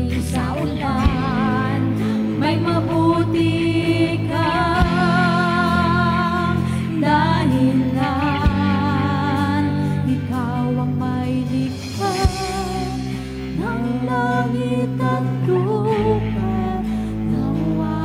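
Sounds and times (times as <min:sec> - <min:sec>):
keyboard and bass: 0:00.0 - 0:18.0
voices singing with vibrato: 0:00.0 - 0:18.0.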